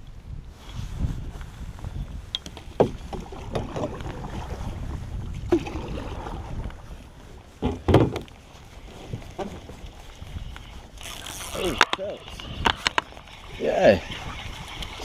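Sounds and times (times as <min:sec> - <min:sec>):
wind rumble on microphone: 0:00.0 - 0:15.0
knocks and thumps on boat: 0:02.4 - 0:06.7, 0:07.6 - 0:08.3, 0:09.0 - 0:09.9.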